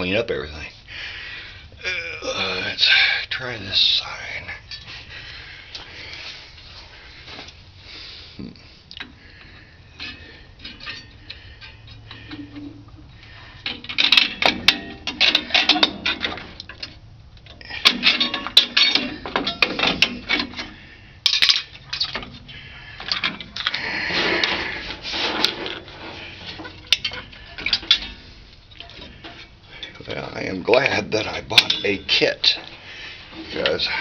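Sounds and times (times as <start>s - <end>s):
metal scraping: 9.5s - 17.0s, 17.7s - 34.0s
metal tools clinking: 9.9s - 13.0s, 13.6s - 23.8s, 24.4s - 34.0s.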